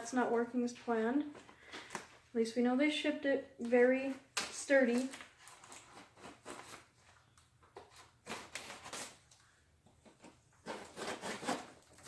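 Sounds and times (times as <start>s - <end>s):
cardboard scraping and rustling: 10.1s - 12.0s.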